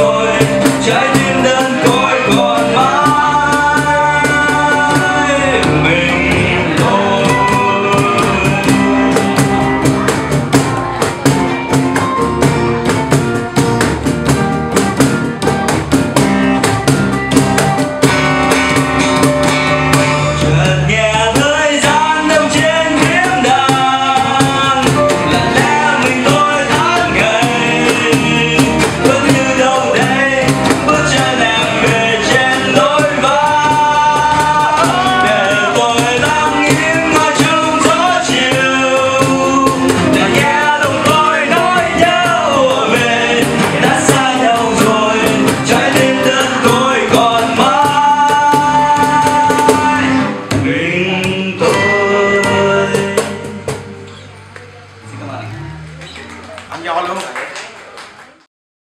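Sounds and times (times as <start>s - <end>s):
person singing pop song: 0.0s - 10.3s, 18.0s - 54.8s
instrumental backing music: 0.0s - 58.1s.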